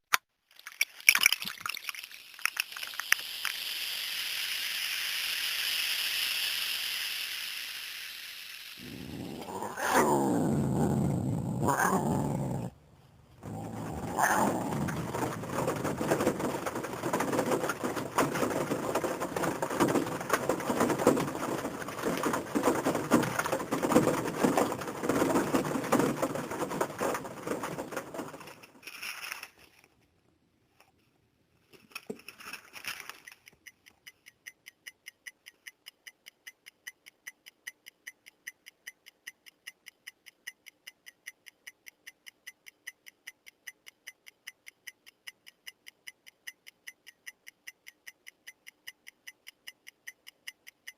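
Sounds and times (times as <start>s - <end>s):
even ticking: 8.8s - 12.8s, 13.4s - 28.8s, 33.3s - 50.9s.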